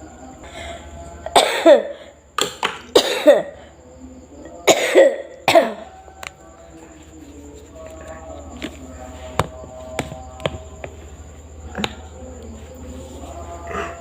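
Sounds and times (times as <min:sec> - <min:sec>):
woman coughing hard: 0:01.3 - 0:02.1, 0:02.9 - 0:03.6, 0:04.6 - 0:05.9.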